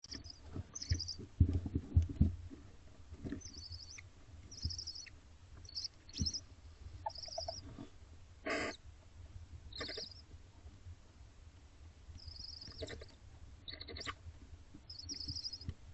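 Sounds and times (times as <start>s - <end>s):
barn owls chittering: 0.0s - 1.2s, 3.4s - 6.4s, 7.0s - 7.6s, 8.5s - 8.8s, 9.7s - 10.2s, 12.2s - 14.2s, 14.9s - 15.7s
owl harsh rasp: 8.5s - 8.8s.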